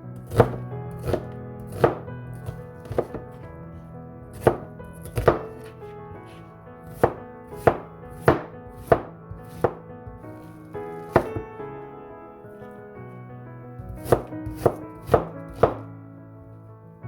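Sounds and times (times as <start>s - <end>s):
knife chopping onion: 0.2s - 3.5s, 4.3s - 10.2s, 11.0s - 11.4s, 13.9s - 15.8s.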